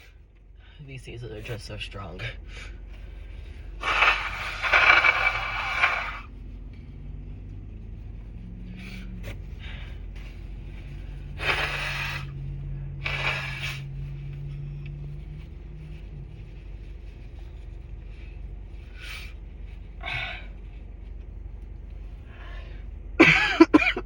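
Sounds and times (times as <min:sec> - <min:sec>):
noisy nasal breathing: 0:02.3 - 0:06.3, 0:08.6 - 0:15.1, 0:17.9 - 0:20.6
person sniffing: 0:11.4 - 0:12.3, 0:13.0 - 0:14.0.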